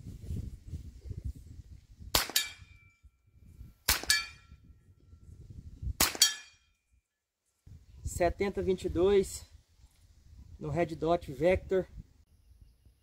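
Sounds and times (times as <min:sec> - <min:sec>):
rifle shots: 0:02.2 - 0:02.6, 0:03.9 - 0:04.3, 0:06.0 - 0:06.4
short metallic ring: 0:02.3 - 0:03.1, 0:04.0 - 0:04.6, 0:06.1 - 0:07.0.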